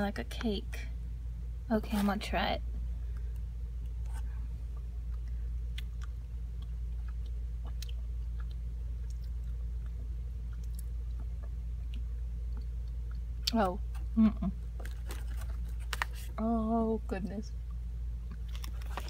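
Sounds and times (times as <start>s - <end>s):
steady low hum: 0.0s - 19.0s
person chewing: 3.2s - 13.3s.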